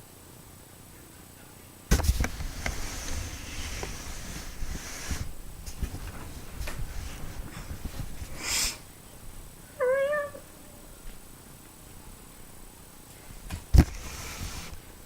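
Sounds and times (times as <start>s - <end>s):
rustling and handling noise: 1.9s - 9.5s, 13.0s - 15.0s
cat meowing: 9.8s - 10.7s.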